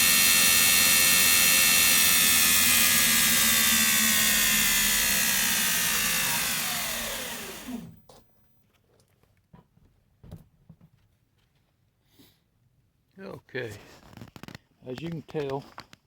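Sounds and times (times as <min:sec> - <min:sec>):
belt grinder whine spinning down: 0:00.0 - 0:08.0.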